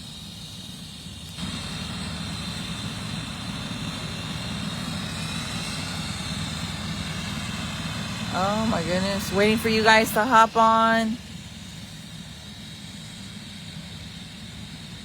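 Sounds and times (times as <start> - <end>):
noise haze: 1.4 - 11.9
vehicle engine rumble: 1.4 - 12.3.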